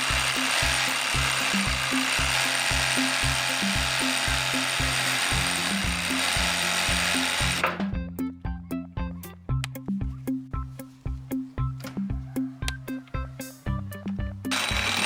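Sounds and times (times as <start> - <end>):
reciprocating saw cutting wood: 0.0 - 7.8, 14.5 - 15.0
music with bass beat: 0.0 - 15.0.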